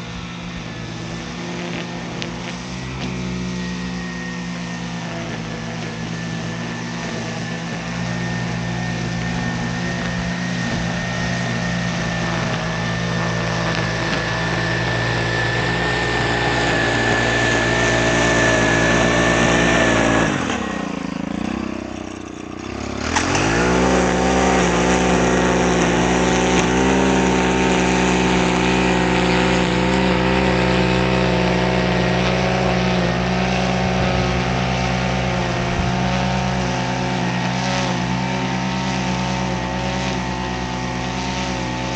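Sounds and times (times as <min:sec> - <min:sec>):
high thin whine: 0:00.0 - 0:22.6
small gasoline engine running: 0:00.0 - 0:41.9.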